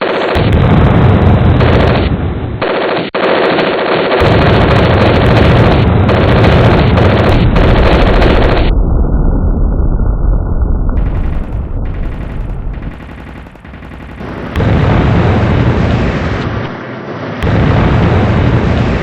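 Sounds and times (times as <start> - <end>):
machine-gun fire: 0.0 - 8.7, 11.0 - 16.1.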